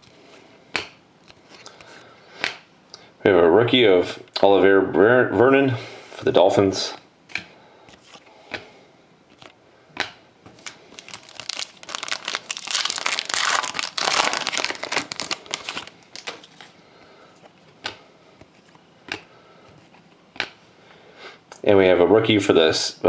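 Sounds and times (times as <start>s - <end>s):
foil wrapper crinkling and tearing: 10.6s - 16.7s
cards clicking and tapping: 17.8s - 18.5s.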